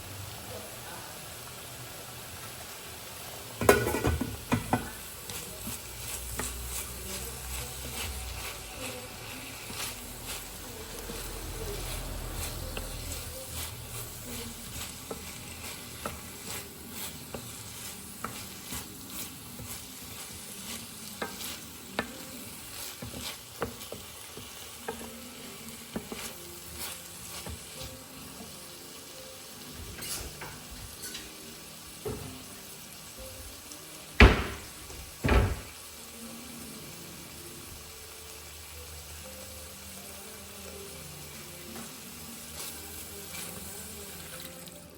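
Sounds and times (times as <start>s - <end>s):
food sizzling in a pan: 0.0s - 44.9s
loud knocks: 34.2s - 35.7s.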